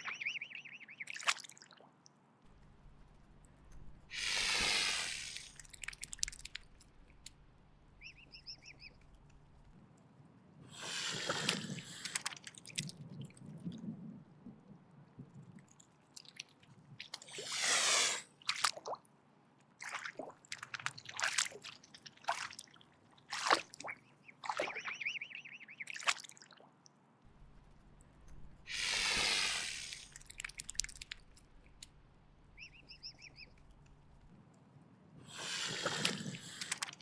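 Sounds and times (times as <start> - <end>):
swan hissing: 3.9 - 6.4, 10.7 - 12.2, 17.3 - 18.3, 28.4 - 33.8, 35.3 - 37.0.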